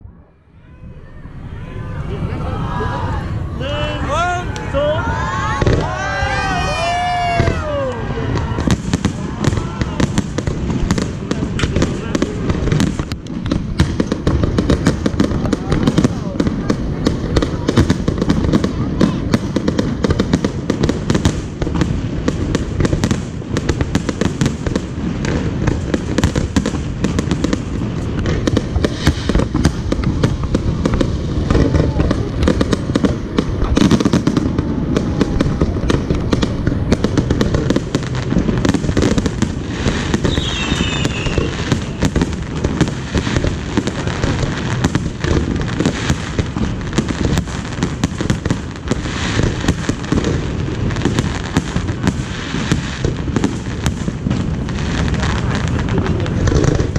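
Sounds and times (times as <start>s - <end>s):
people's voices: 0.0s - 22.8s, 26.8s - 47.0s, 54.4s - 56.9s
fireworks bursts and crackling: 0.0s - 56.9s.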